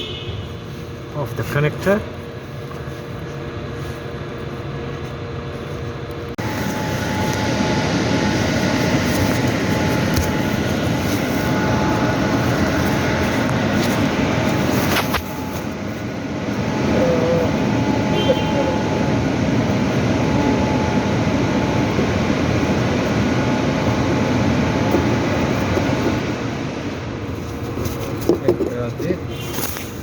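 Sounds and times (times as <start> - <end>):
steady mechanical noise: 0.0 - 30.0.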